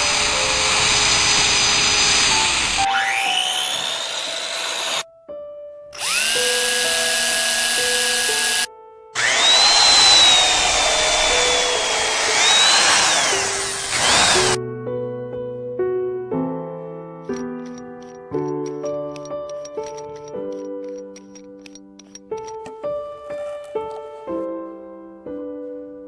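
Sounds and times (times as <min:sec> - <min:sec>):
power tool cutting wood: 0:00.0 - 0:05.0, 0:06.0 - 0:14.6
power tool motor whine: 0:00.0 - 0:05.0, 0:06.0 - 0:14.6.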